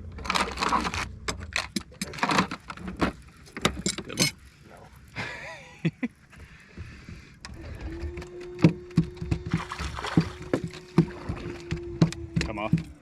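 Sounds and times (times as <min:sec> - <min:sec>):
fish flopping on boat: 0:08.8 - 0:13.0.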